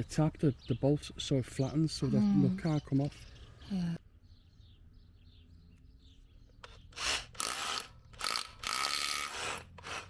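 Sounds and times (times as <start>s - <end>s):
rasping strokes: 6.6s - 10.0s.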